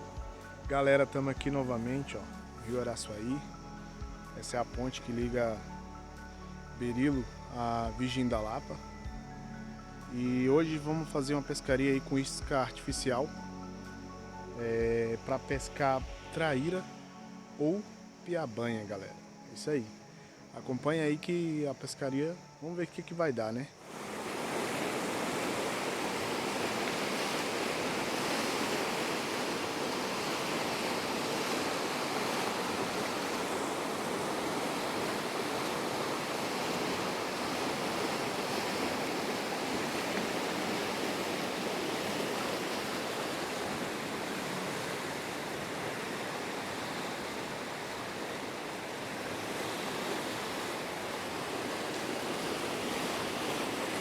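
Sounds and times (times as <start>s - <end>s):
river water rushing over rapids: 0.0s - 5.4s, 23.7s - 54.0s.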